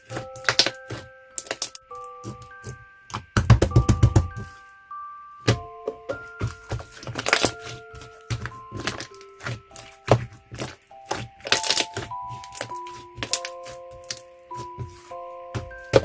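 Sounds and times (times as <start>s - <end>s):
music-box background music: 0.0s - 16.0s.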